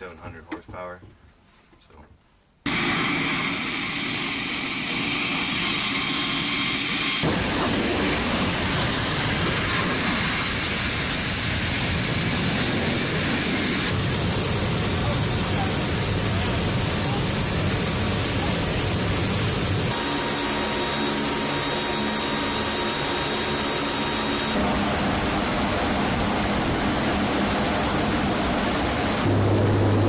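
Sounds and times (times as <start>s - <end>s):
turboprop engines in flight: 2.7s - 30.0s.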